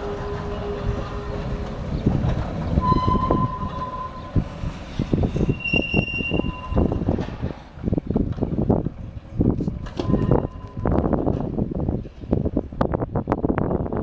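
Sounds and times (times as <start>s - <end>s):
tram clattering on track: 0.0s - 14.0s
high squeals: 2.7s - 7.1s.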